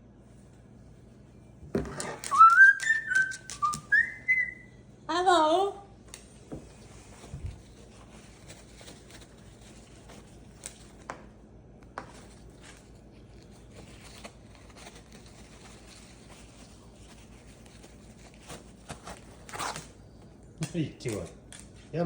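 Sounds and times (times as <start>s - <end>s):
paper towel rustling: 6.3s - 22.0s.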